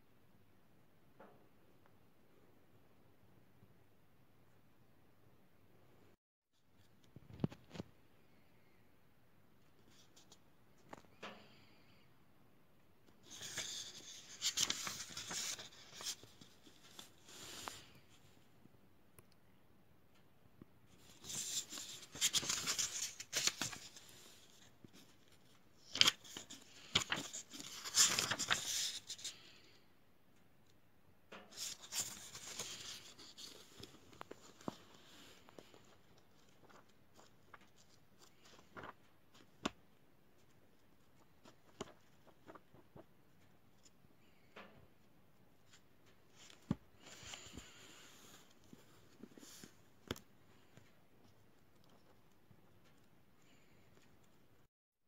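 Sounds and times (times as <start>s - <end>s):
paper rustling and sliding: 13.2s - 18.2s, 20.9s - 29.4s, 31.5s - 39.8s, 41.1s - 43.1s, 46.3s - 50.9s.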